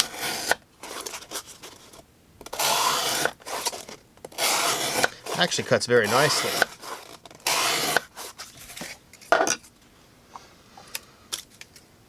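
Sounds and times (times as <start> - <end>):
knife slicing cardboard: 0.0 - 1.5, 2.5 - 9.0.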